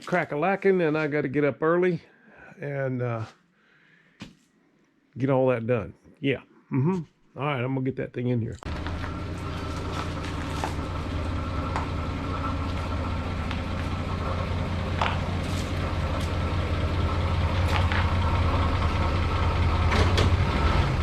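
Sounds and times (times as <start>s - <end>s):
car engine droning: 8.6s - 21.0s.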